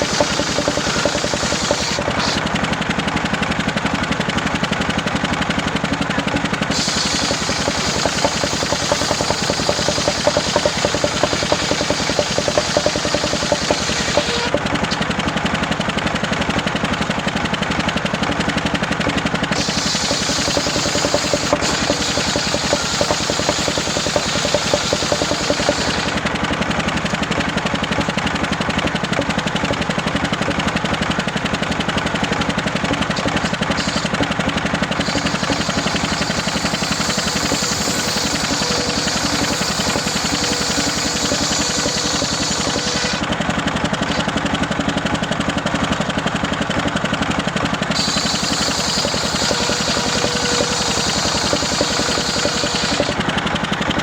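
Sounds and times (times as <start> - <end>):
saw blade cutting wood: 0.0 - 2.7, 6.6 - 15.1, 19.5 - 30.7, 32.8 - 44.5, 47.9 - 53.4
saw engine running: 0.0 - 54.0.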